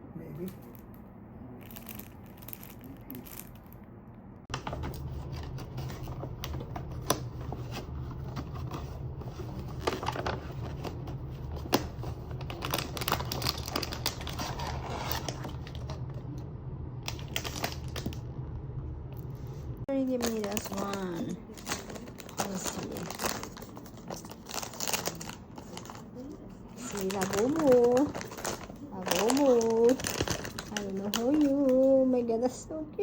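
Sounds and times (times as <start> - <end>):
steady low hum: 0.0 - 33.0
packaging clicks taps and crinkling: 9.6 - 16.0, 20.2 - 26.1, 26.8 - 31.9.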